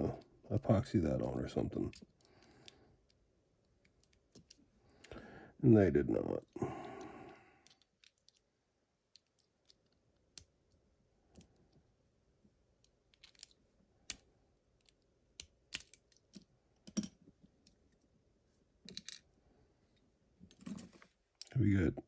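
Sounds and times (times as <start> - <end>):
small metal parts clicking: 7.6 - 8.5, 12.8 - 18.0, 18.9 - 19.3.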